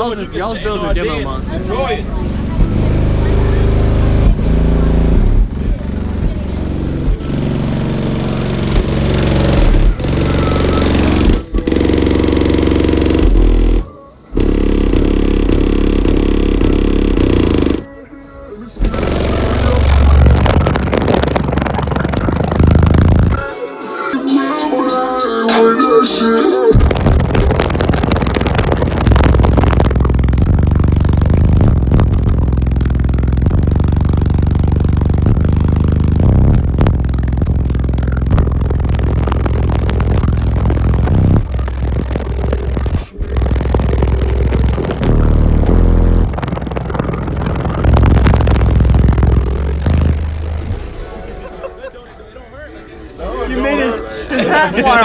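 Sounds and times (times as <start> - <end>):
subwoofers playing loud bass notes: 0.0 - 18.0, 18.7 - 23.5, 26.7 - 51.9
rattling: 1.4 - 17.9, 18.8 - 23.4.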